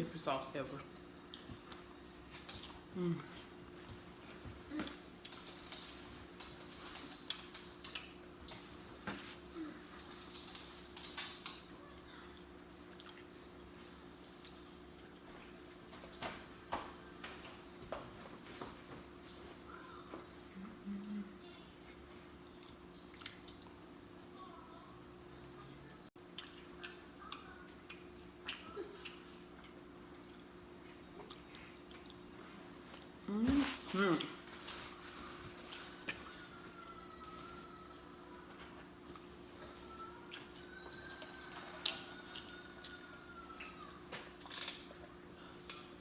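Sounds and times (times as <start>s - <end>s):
faint steady hum: 0.0s - 46.0s
person chewing food: 0.9s - 11.6s, 12.4s - 16.2s, 26.2s - 36.6s, 38.8s - 46.0s
mouth chewing noises: 26.3s - 36.3s.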